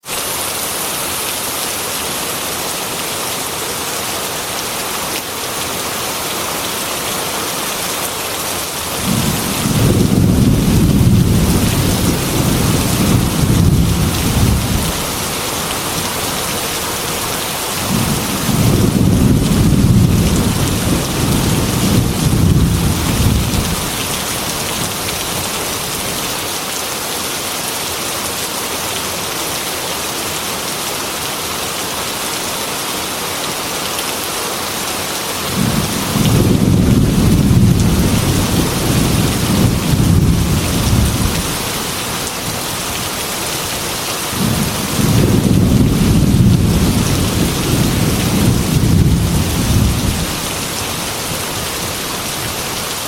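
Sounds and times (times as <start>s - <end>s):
heavy rain against a window: 0.1s - 53.0s
thunder rolling: 8.9s - 15.2s, 17.8s - 24.0s, 35.5s - 41.6s, 44.4s - 50.4s.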